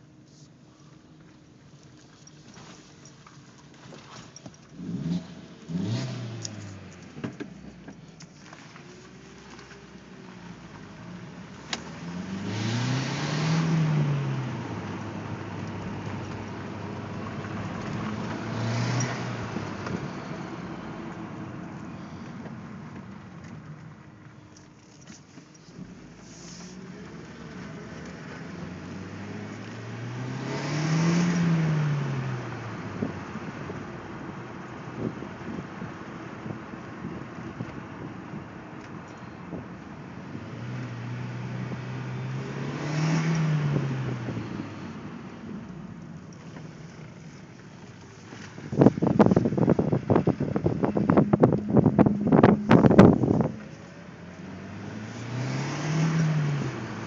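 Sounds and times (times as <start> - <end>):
car engine running and revving: 0.0 - 57.0.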